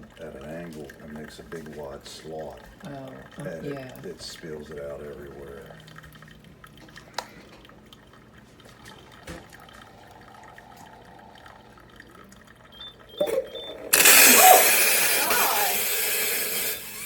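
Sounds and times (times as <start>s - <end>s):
hot water rushing hiss: 13.2s - 17.0s.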